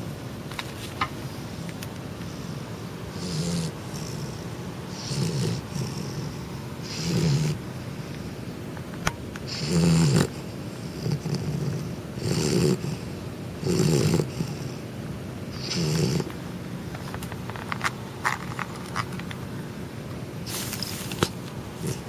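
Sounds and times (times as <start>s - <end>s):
puppy snoring: 1.4s - 8.5s, 9.4s - 14.9s, 15.5s - 16.4s, 20.4s - 22.0s.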